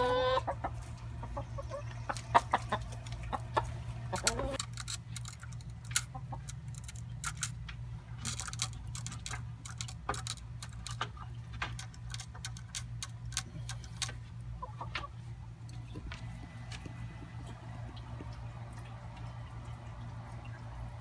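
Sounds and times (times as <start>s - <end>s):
chicken clucking: 0.0s - 4.6s, 14.6s - 15.2s
steady low hum: 0.0s - 21.0s.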